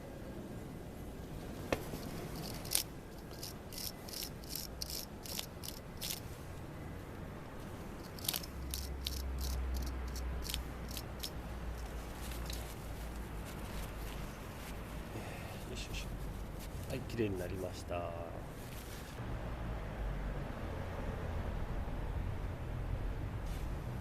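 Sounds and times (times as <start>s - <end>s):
brush scrubbing a bolt: 1.9s - 6.2s, 8.0s - 14.2s.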